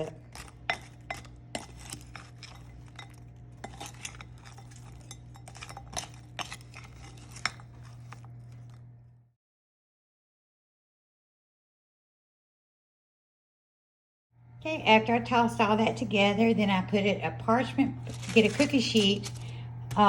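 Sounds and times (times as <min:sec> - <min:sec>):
utensil clinking against bowl: 0:00.0 - 0:08.8
steady low hum: 0:00.0 - 0:09.3, 0:14.4 - 0:20.0.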